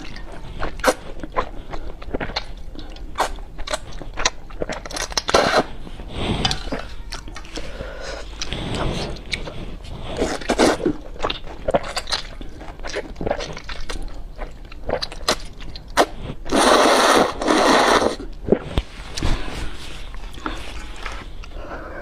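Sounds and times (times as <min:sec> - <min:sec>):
chewing and smacking: 0:00.0 - 0:05.7, 0:08.3 - 0:16.2
loud slurp of noodles: 0:16.5 - 0:18.2.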